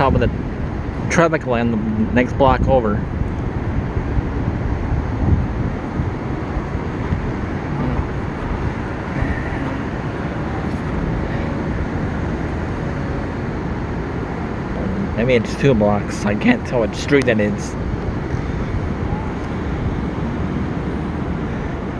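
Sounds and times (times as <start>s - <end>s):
low rumble of city noise: 0.0s - 21.9s.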